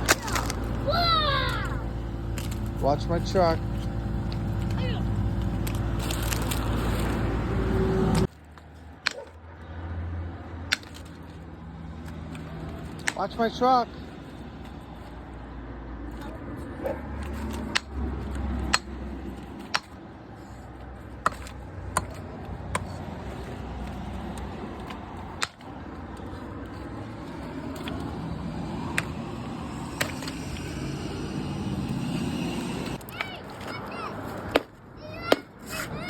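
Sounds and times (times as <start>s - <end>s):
engine running low: 0.4s - 8.3s, 26.4s - 33.0s
sharp knocks of concrete chunks: 10.7s - 11.3s, 12.8s - 13.3s, 17.2s - 19.0s, 19.6s - 20.0s, 21.2s - 23.0s, 24.8s - 25.7s.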